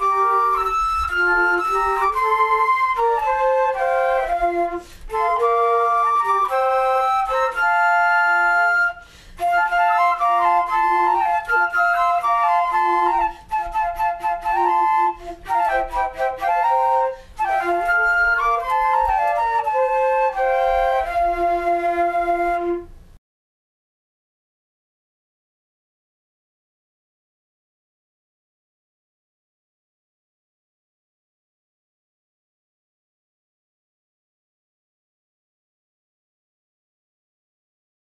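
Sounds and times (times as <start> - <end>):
instrumental music in harmony: 0.0 - 23.0.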